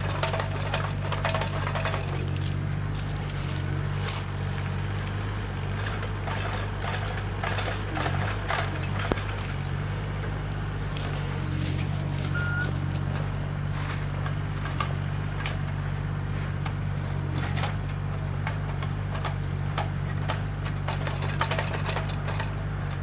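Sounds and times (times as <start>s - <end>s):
wood and branches snapping: 0.8s - 15.8s
electric saw motor humming: 6.6s - 15.8s.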